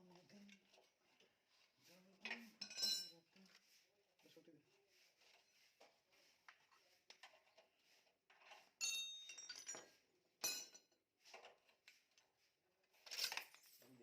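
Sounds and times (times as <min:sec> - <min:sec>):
metal tools clinking: 0:02.2 - 0:03.2, 0:08.8 - 0:10.9, 0:13.0 - 0:13.8.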